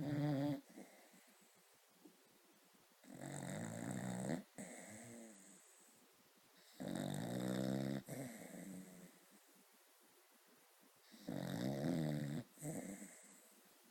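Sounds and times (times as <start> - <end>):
person snoring: 11.1 - 13.4.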